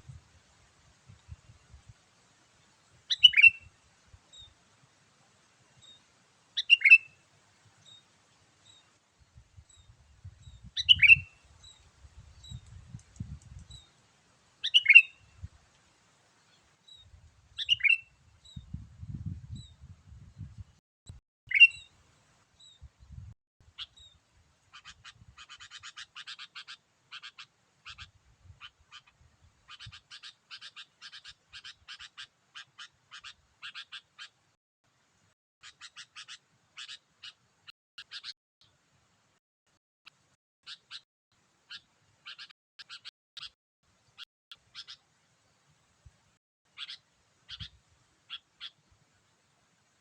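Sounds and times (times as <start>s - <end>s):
bird chattering calls: 3.1s - 3.6s, 24.7s - 29.1s, 29.7s - 34.4s, 35.6s - 37.4s, 38.0s - 38.4s, 41.7s - 43.6s, 44.5s - 45.0s, 46.8s - 47.7s, 48.3s - 48.8s.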